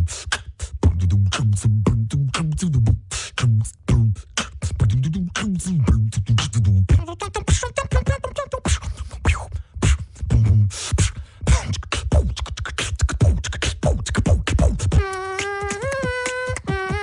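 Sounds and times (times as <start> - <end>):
person beatboxing: 0.0 - 17.0.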